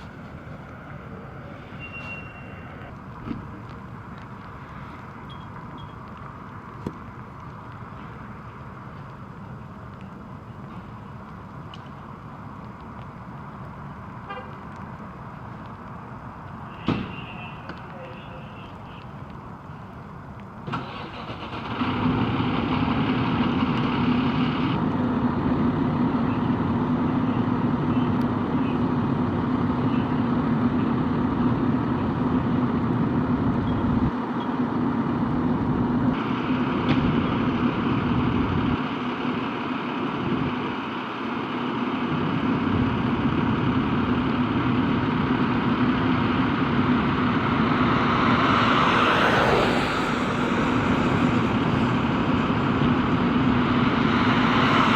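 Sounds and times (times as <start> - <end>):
diesel engine droning: 0.0 - 54.9
rushing noise: 20.7 - 54.9.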